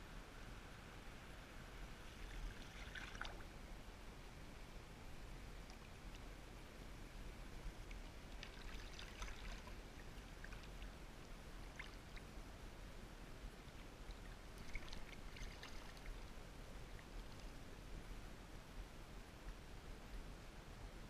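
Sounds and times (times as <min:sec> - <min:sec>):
faint river water running: 0:00.0 - 0:21.0
water splashes and drips: 0:02.1 - 0:03.5, 0:07.8 - 0:12.3, 0:13.8 - 0:17.6.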